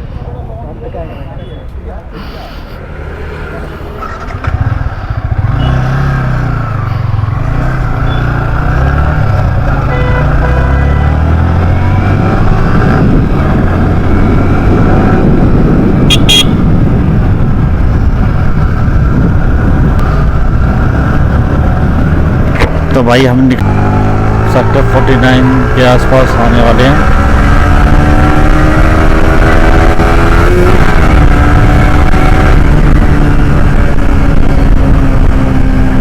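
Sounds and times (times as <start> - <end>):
motorcycle engine pulling away: 4.0 - 15.6
brief beep: 8.0 - 8.4
wind noise: 11.1 - 24.5, 25.3 - 36.0.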